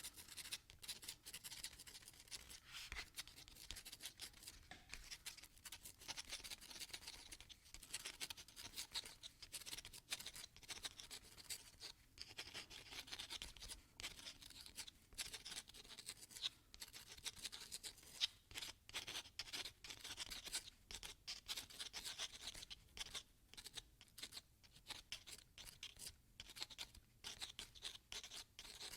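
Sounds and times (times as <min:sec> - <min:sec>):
pen scratching on paper: 0:00.1 - 0:16.3.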